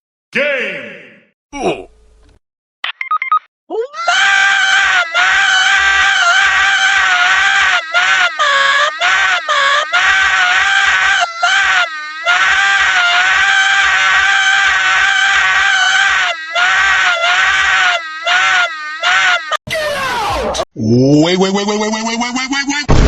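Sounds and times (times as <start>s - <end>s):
high-pitched scream: 3.8s - 20.6s.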